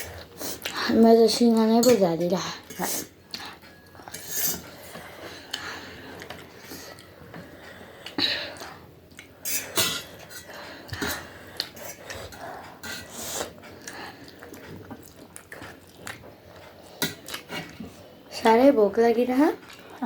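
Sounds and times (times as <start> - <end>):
cutlery clinking on a dish: 9.4 - 12.2.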